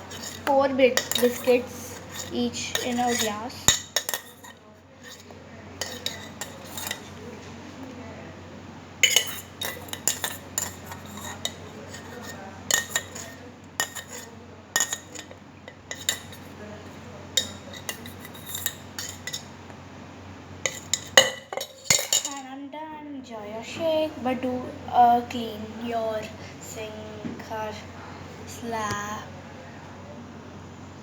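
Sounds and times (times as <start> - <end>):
utensils and glassware clinking: 0.0 - 7.2, 9.0 - 16.5, 17.4 - 19.5, 20.6 - 22.5.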